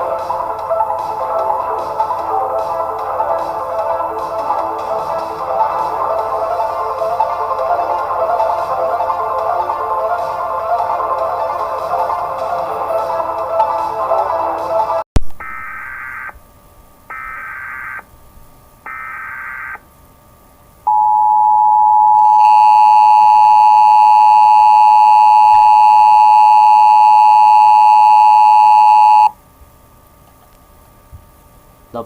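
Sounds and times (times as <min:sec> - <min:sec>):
buzzing data bursts: 0:15.2 - 0:16.4, 0:17.1 - 0:18.1, 0:18.9 - 0:19.8, 0:20.9 - 0:29.3
two-tone attention signal: 0:20.9 - 0:29.3.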